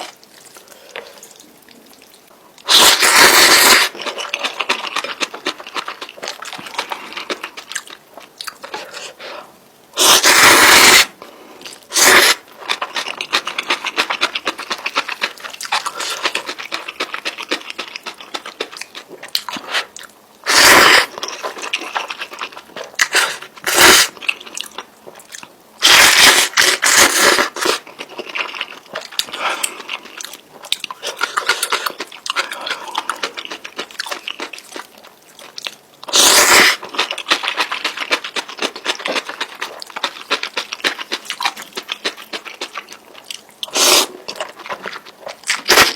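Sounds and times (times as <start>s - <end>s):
wet chewing and biting: 12.0s - 19.9s, 21.2s - 45.9s.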